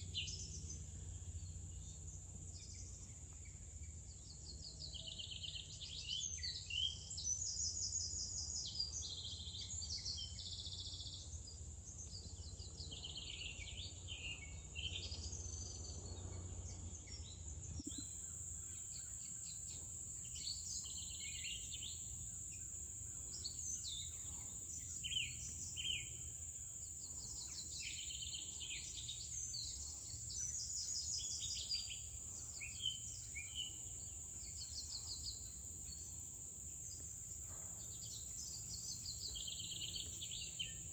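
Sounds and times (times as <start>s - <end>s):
high-pitched insect drone: 17.8s - 40.9s
birds chirping and trilling: 17.9s - 36.1s.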